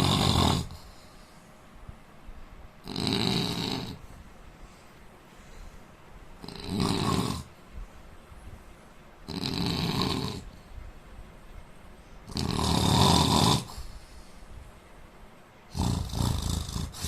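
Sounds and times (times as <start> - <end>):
man snoring: 0.0 - 0.8, 2.8 - 4.0, 6.4 - 7.5, 9.3 - 10.6, 12.3 - 13.8, 15.7 - 17.0.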